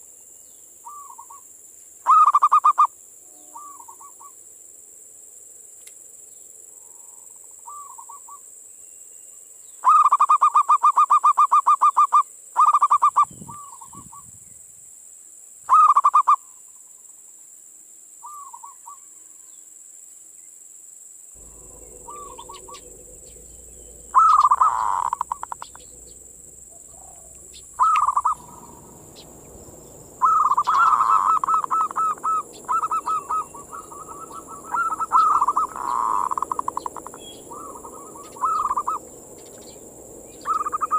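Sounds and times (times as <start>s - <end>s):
dove cooing: 2.1s - 4.3s, 21.4s - 40.9s.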